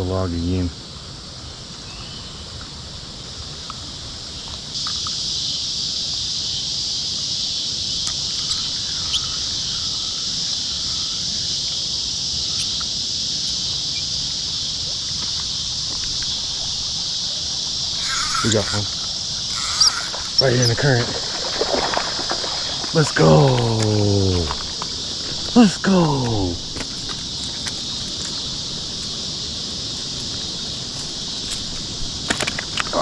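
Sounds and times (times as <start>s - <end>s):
high-pitched insect chorus: 0.0s - 33.0s
faint clicks: 4.4s - 5.2s.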